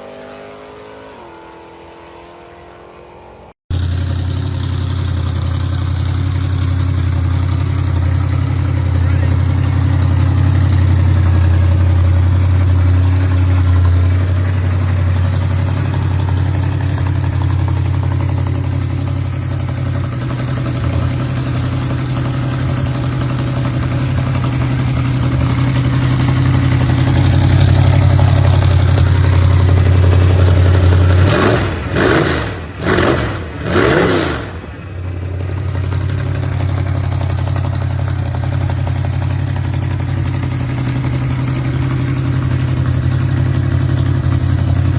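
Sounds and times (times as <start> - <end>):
engine revving blips: 0.0 - 35.3
car engine idling loudly: 3.7 - 44.9.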